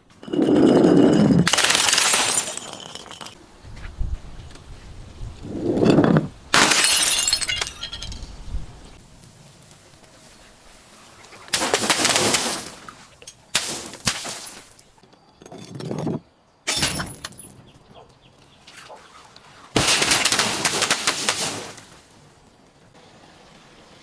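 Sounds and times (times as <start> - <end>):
sharp crack: 19.8 - 22.0.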